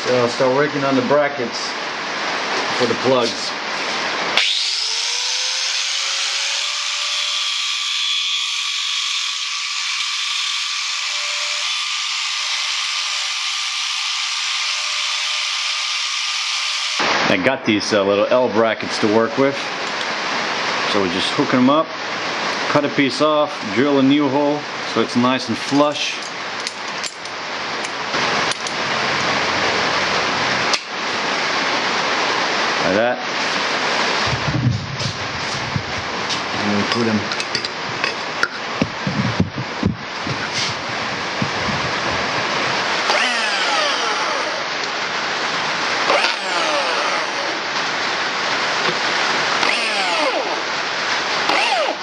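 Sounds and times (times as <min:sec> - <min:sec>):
high-speed power tool whining: 0:04.3 - 0:17.1, 0:42.5 - 0:45.0, 0:45.7 - 0:47.8, 0:48.8 - 0:52.0.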